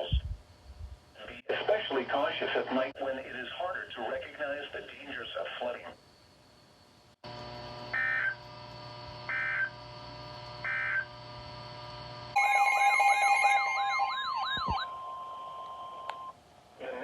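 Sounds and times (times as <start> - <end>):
warbling attention alarm: 7.9 - 8.4, 9.3 - 9.7, 10.6 - 11.1, 12.4 - 16.4.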